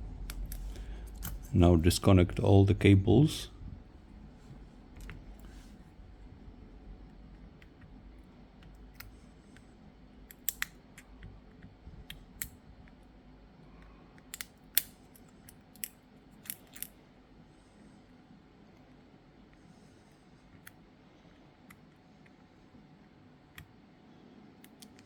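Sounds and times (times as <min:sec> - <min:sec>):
connectors snapping off: 0:10.3 - 0:11.1.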